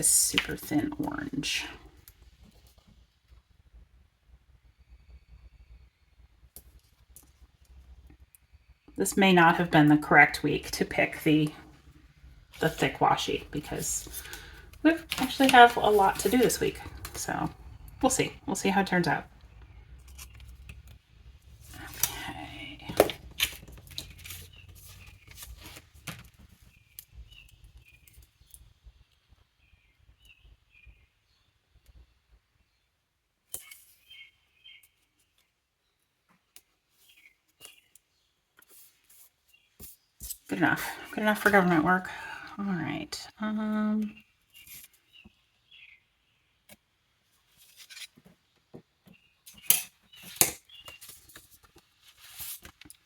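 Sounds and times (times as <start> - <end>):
paper and tape rustling: 12.6 - 17.2, 21.6 - 26.7, 49.5 - 53.0
faint bird chirps: 33.6 - 36.1.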